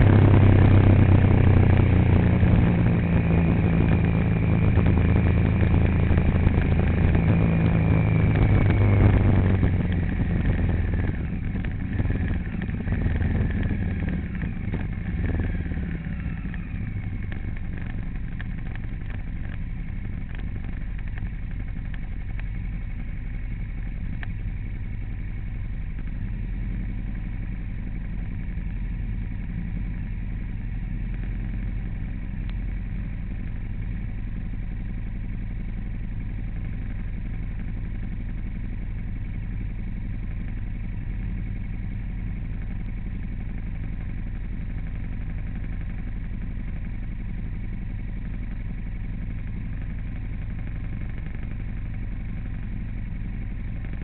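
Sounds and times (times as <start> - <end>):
vehicle engine running: 0.0 - 54.0.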